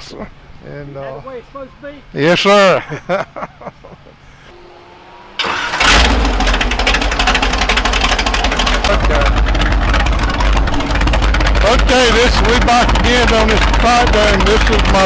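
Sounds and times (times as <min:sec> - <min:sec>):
tractor engine running: 0:04.6 - 0:15.0.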